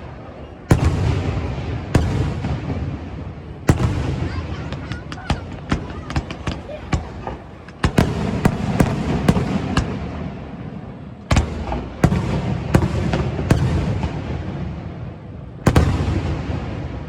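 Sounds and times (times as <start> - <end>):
heavy firework booms: 0.6 - 17.0
firework bangs and cracks: 0.7 - 17.0.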